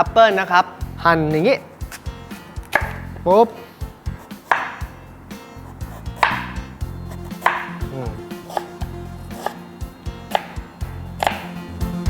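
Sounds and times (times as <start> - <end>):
blade tapping cutting board: 2.6 - 3.2, 4.2 - 5.0, 6.0 - 9.6, 10.3 - 11.6
knife slicing apple: 2.7 - 3.2, 4.1 - 5.0, 5.6 - 9.7, 10.3 - 10.6, 11.2 - 11.6.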